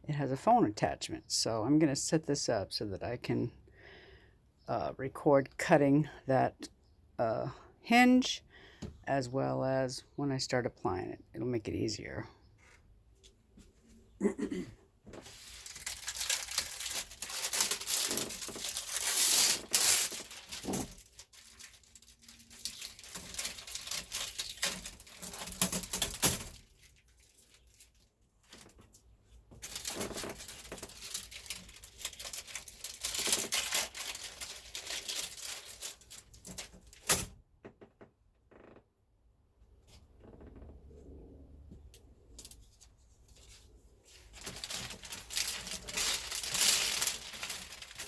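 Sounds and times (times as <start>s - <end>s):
packaging crinkling and rustling: 15.1s - 37.3s, 42.4s - 48.0s.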